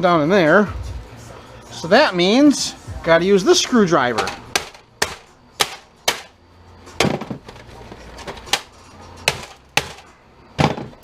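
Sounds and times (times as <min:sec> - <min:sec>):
plastic casing clacks and knocks: 0:04.2 - 0:05.2, 0:07.0 - 0:11.0.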